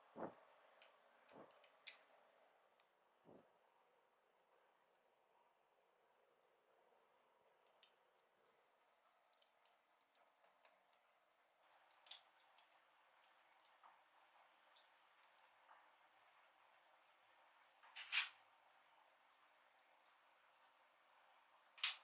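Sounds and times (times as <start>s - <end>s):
small parts clicking and tapping: 0.0s - 2.1s, 9.3s - 11.0s, 11.8s - 14.0s, 17.8s - 18.4s, 19.0s - 22.0s.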